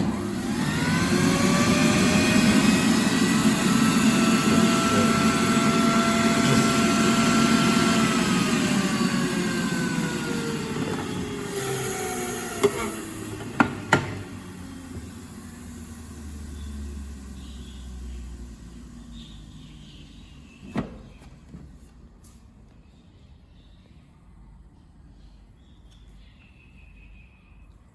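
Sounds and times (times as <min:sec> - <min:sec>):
hair dryer whining: 0:00.0 - 0:19.1.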